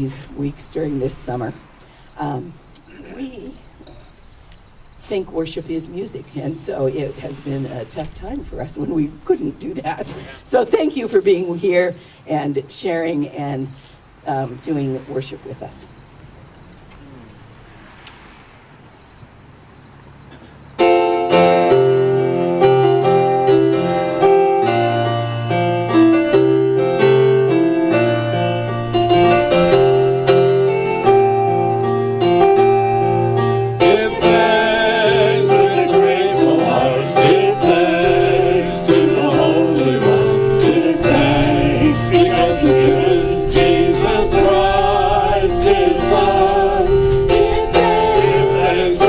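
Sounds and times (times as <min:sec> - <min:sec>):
keyboard playing hymn chords: 0:19.1 - 0:49.0
voices singing: 0:33.6 - 0:49.0.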